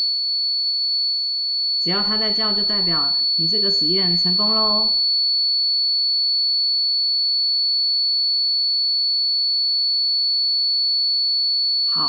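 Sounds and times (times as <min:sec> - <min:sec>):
high-pitched buzzer tone: 0:01.8 - 0:05.1, 0:11.8 - 0:12.0.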